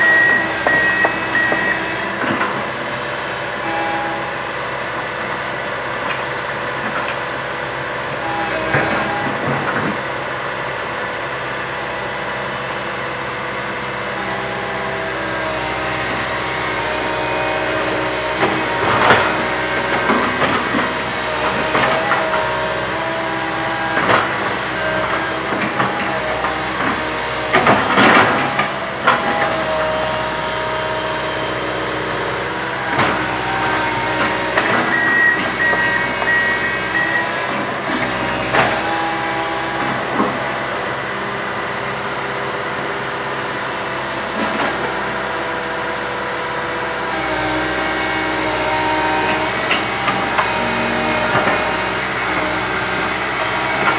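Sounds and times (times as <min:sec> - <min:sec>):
knocks and clanks: 0:00.0 - 0:03.8, 0:08.5 - 0:10.1, 0:17.1 - 0:31.4
excavator engine drone: 0:00.0 - 0:53.9.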